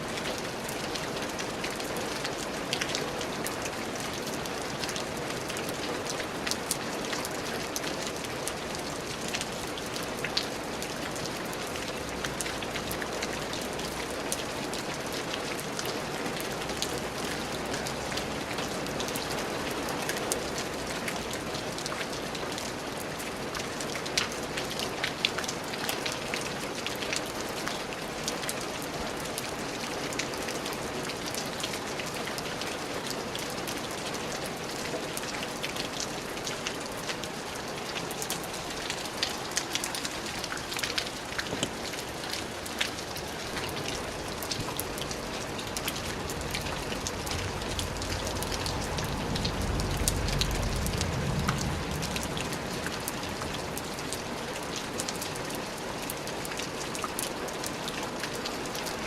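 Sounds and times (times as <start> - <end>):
steady rain patter: 0.0 - 59.0
louder raindrop hits: 44.4 - 54.4.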